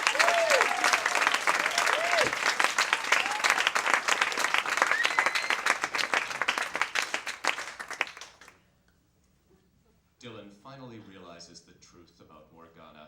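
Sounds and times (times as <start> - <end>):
audience applauding: 0.0 - 8.6.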